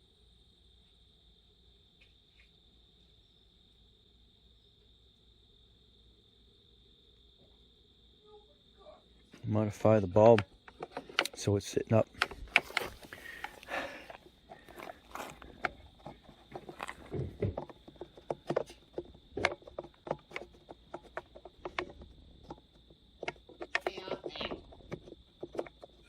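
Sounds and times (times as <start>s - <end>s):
plastic parts clicking and scraping: 10.2s - 26.0s.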